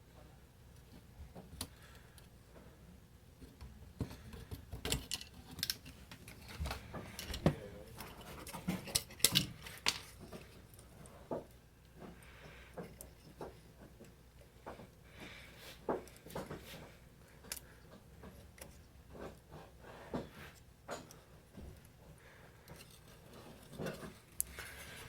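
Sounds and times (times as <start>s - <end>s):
tools clicking and tapping: 3.4s - 14.9s.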